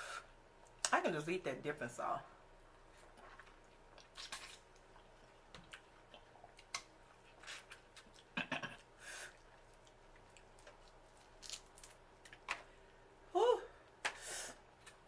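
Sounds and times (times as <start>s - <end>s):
wet eating clicks and smacks: 3.2s - 12.6s.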